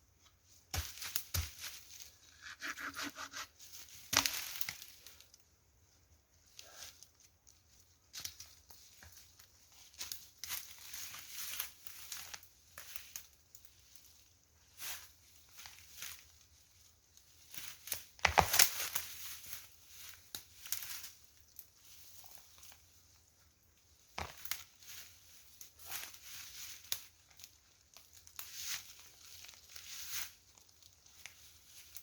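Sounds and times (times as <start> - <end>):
branches rustling and crackling: 0.0 - 32.0
branches snapping: 4.0 - 5.2, 17.5 - 19.3, 24.1 - 25.0.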